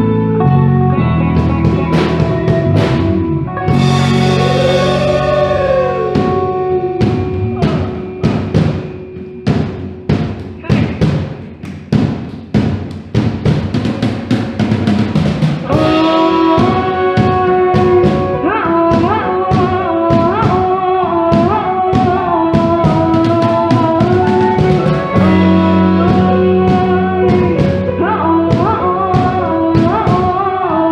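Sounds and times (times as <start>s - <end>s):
deep bass note: 0.0s - 8.9s
sliding bending melody: 0.0s - 10.6s, 13.8s - 18.9s
drum kit beating: 0.5s - 30.4s.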